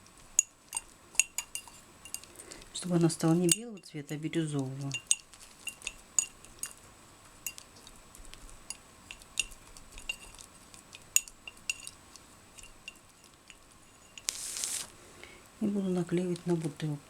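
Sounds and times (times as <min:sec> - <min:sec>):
tool clinking against container: 0:03.3 - 0:04.0.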